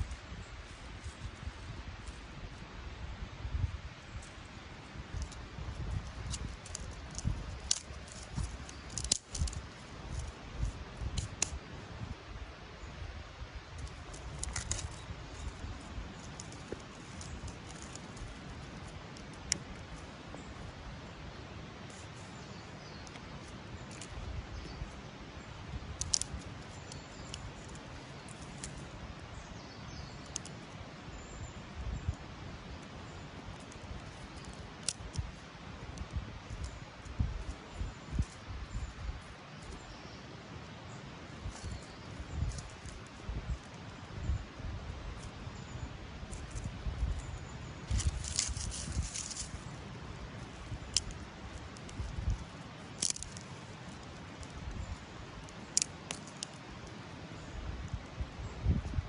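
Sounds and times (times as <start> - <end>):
low rumble and hiss: 0.0 - 59.0
wood fire crackling: 4.3 - 11.7, 13.7 - 21.0, 25.6 - 29.2, 44.8 - 57.3.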